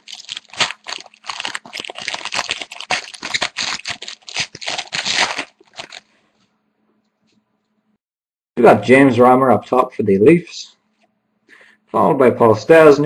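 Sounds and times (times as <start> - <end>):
card pack wrapper tearing: 0.0 - 6.1.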